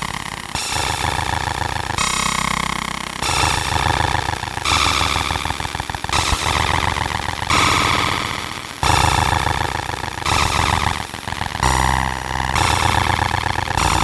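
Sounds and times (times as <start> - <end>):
laser engraver buzzing whine: 3.3 - 14.0.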